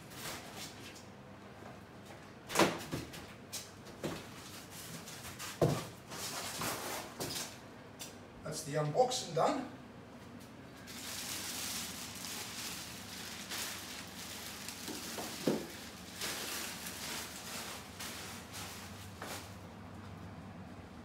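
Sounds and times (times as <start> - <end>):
packaging rustling: 10.8 - 19.6.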